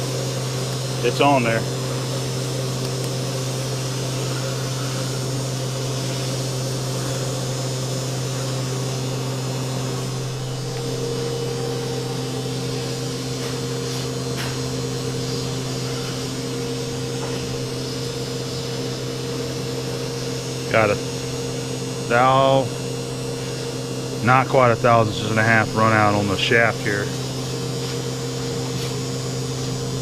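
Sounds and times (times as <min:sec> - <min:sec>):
machine shop equipment humming: 0:00.0 - 0:30.0.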